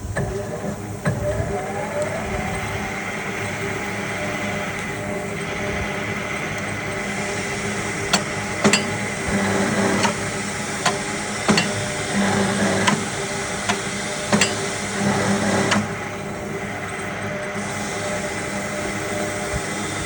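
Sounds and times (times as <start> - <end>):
electric motor humming: 0.0 - 20.0.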